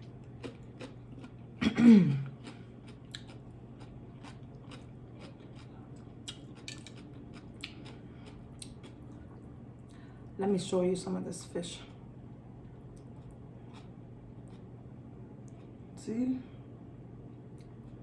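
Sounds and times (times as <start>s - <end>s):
steady low hum: 0.0s - 18.0s
chewing and wet mouth clicks: 2.4s - 9.4s, 12.9s - 14.6s.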